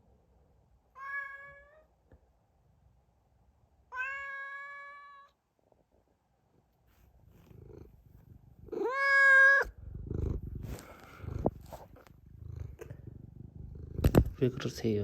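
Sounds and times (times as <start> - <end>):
cat meowing: 0.9 - 1.9, 3.9 - 5.4, 8.7 - 9.7.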